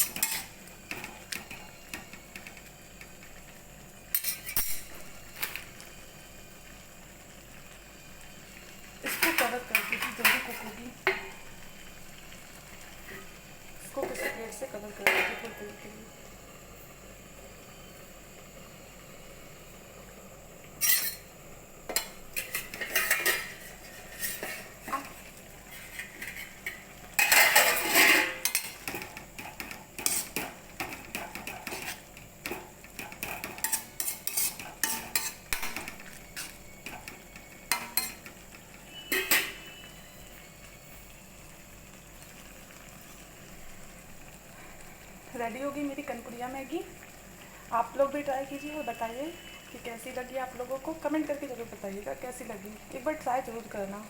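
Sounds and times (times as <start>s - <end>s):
metal utensils clattering on a pan: 0.0s - 2.6s, 4.1s - 5.6s, 9.0s - 11.4s, 13.0s - 15.9s, 20.8s - 21.3s, 21.9s - 39.8s
noodles sizzling: 0.0s - 54.0s.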